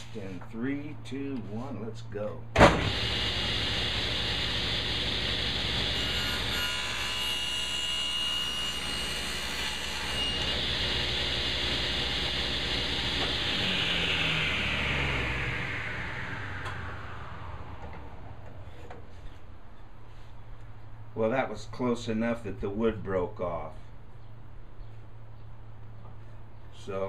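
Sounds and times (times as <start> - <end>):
table saw cutting wood: 2.6 - 18.7
saw blade whine spinning down: 2.8 - 19.4.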